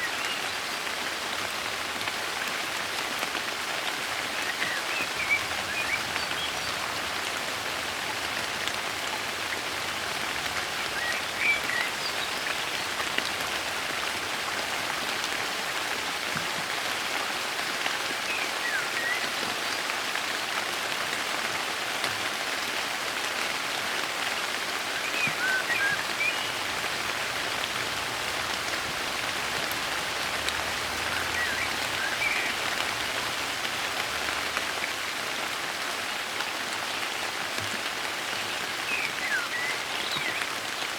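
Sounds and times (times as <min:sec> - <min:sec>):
soft rain falling: 0:00.0 - 0:40.9
bird chirps: 0:31.1 - 0:32.7.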